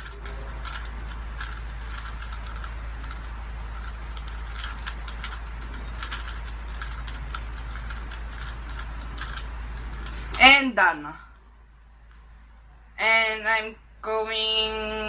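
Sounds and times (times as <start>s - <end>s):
plastic puzzle cube clicking: 0.0s - 10.3s
steady low hum: 0.0s - 15.0s.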